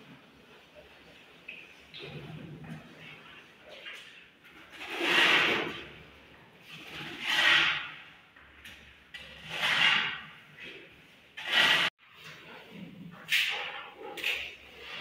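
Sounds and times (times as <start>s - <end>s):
trowel scraping wet plaster: 4.6s - 12.5s.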